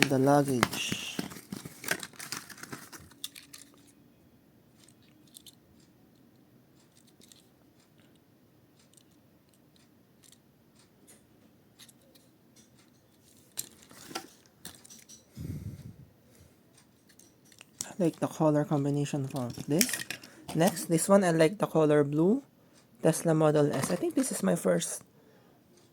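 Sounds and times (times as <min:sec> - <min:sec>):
blister packaging being opened: 0:00.0 - 0:03.9.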